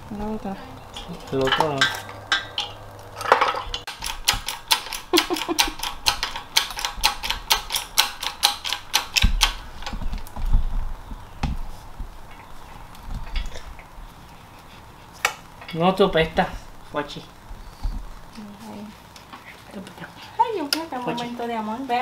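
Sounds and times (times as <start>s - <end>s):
ratchet wrench clicking: 3.9s - 9.6s.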